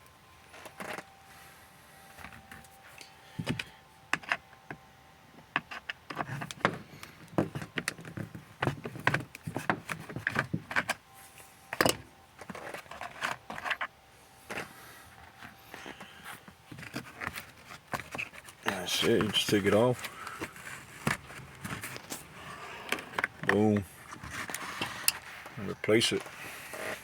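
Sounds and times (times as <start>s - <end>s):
clicks knocks and rattles of hand work: 5.4s - 11.0s.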